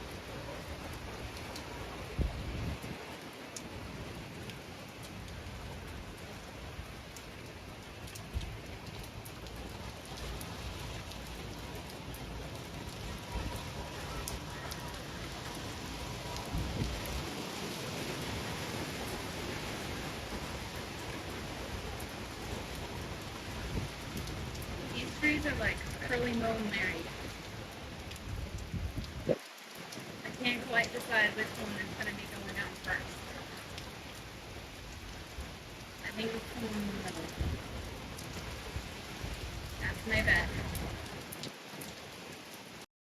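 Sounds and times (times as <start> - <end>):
heavy rain falling: 0.0 - 42.9
wind buffeting microphone: 0.1 - 3.2, 12.2 - 27.0, 27.8 - 29.4, 37.3 - 41.2.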